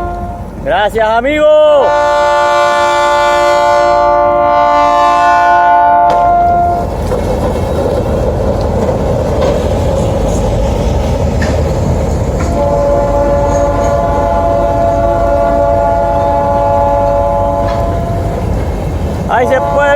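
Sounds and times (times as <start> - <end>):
locomotive horn blast: 0.0 - 0.5, 1.8 - 6.8, 12.4 - 18.5, 19.3 - 19.9
train rumbling past: 0.0 - 19.9.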